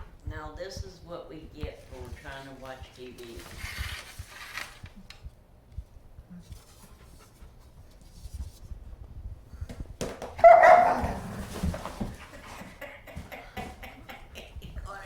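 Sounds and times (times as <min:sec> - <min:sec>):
dog barking: 0:10.4 - 0:11.3.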